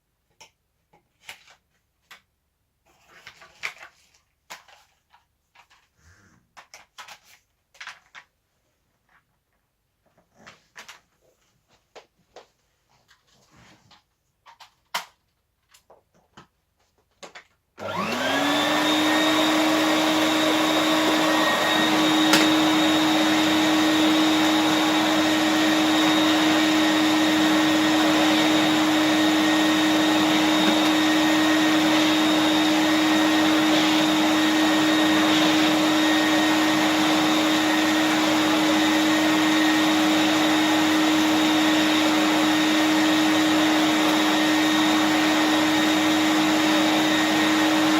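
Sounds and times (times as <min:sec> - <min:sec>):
vacuum cleaner motor whine: 0:17.8 - 0:47.9.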